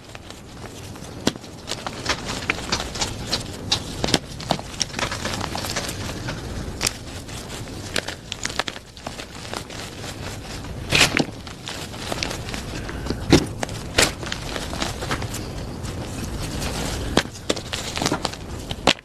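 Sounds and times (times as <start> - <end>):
chalk crunching by hand: 0.0 - 19.0
soft powdery rustle: 0.0 - 19.0.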